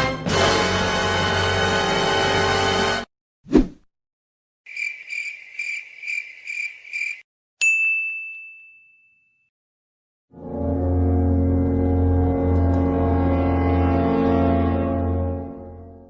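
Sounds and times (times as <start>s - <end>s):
music: 0.0s - 3.1s, 10.3s - 16.0s
cricket chirping sound effect: 4.7s - 7.3s
bright ding: 7.6s - 9.5s.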